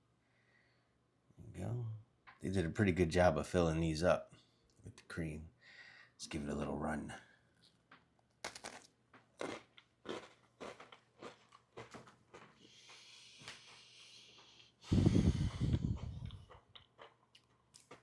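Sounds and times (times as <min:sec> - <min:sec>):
crunchy cookie chewing: 0:08.4 - 0:14.8, 0:15.5 - 0:18.0.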